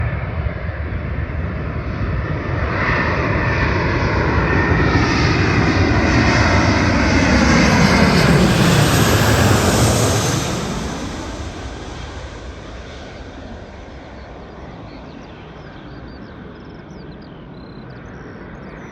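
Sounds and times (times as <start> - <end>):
jet airliner passing: 0.0 - 18.9.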